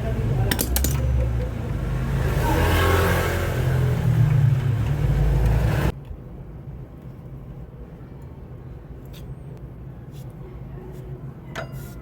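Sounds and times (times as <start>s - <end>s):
vehicle engine rumbling: 0.0s - 8.0s.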